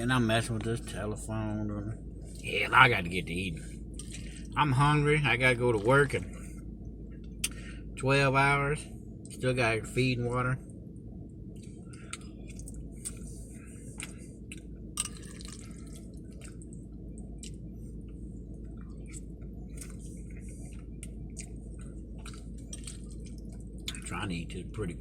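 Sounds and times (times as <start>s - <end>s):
steady low hum: 0.0s - 25.0s
person chewing noisily: 3.8s - 4.6s, 11.5s - 24.6s.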